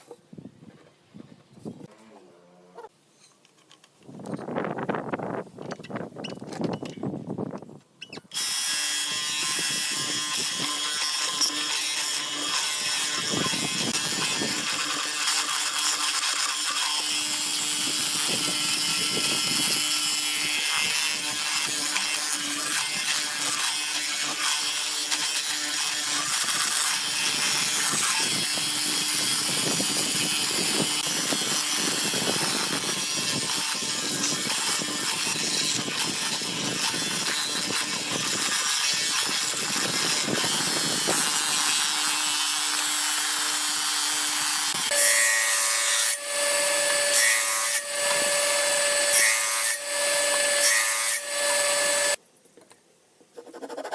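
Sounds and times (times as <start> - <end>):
power tool running on wood: 8.3 - 52.2.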